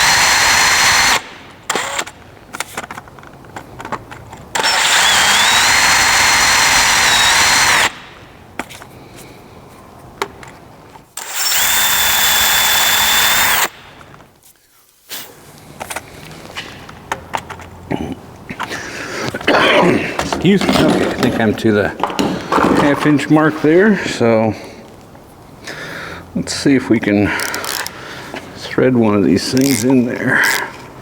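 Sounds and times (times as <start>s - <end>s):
power drill boring: 0.0s - 2.1s, 4.6s - 8.0s, 11.2s - 13.8s.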